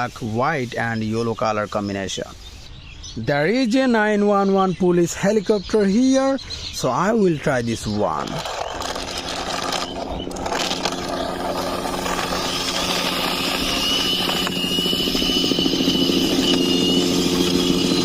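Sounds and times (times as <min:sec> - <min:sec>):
toy helicopter buzzing drone: 0:08.1 - 0:18.0
thin high whine: 0:08.2 - 0:18.0.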